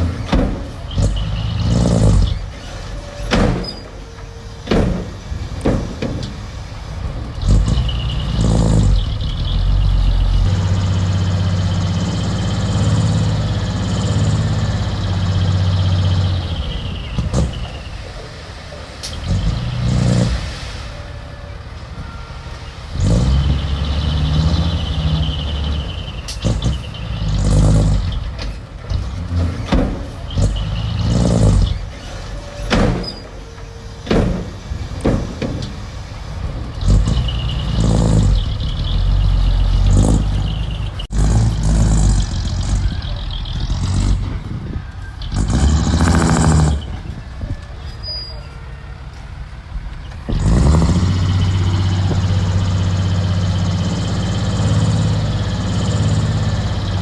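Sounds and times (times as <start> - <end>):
heavy engine revving: 0.0 - 57.0
metallic clanks and knocks: 0.1 - 7.8, 27.8 - 30.6, 31.2 - 35.9.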